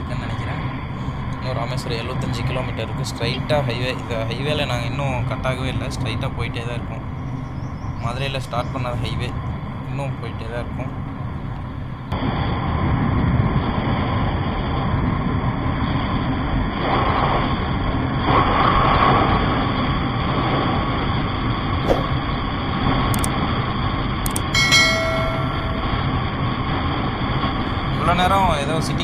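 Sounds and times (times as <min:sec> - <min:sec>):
wind and road noise: 0:00.0 - 0:29.0
short pitched tone: 0:24.4 - 0:26.2.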